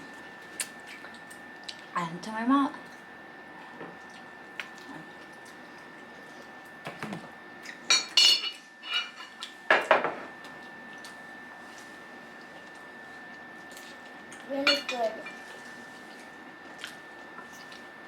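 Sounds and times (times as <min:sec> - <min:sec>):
dishes and utensils clinking: 0:07.9 - 0:10.3, 0:14.7 - 0:15.4.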